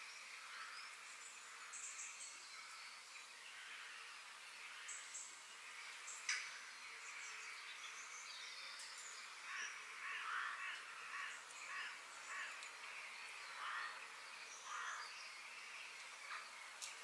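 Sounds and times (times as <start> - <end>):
background hiss: 0.0 - 17.0
small birds chirping: 0.0 - 17.0
harsh bird calls: 3.4 - 17.0.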